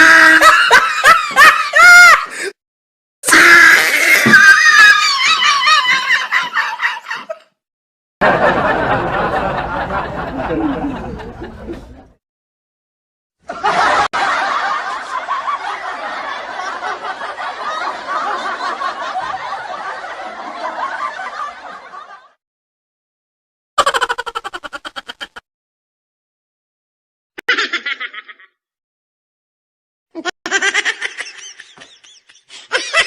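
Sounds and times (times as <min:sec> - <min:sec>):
laughter: 0:00.1 - 0:02.5, 0:04.6 - 0:07.6, 0:08.2 - 0:12.2, 0:13.4 - 0:22.4, 0:23.8 - 0:25.4, 0:27.4 - 0:28.6, 0:30.2 - 0:33.0.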